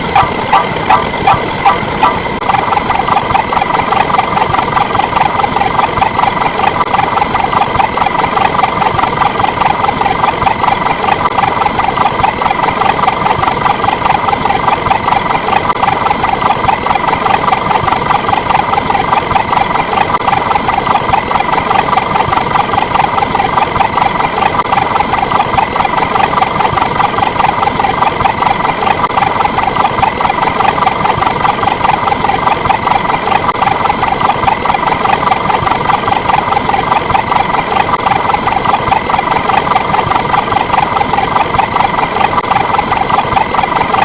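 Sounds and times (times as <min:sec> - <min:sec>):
pulsing engine-like drone: 0:00.0 - 0:44.0
steady high-pitched whine: 0:00.0 - 0:44.0.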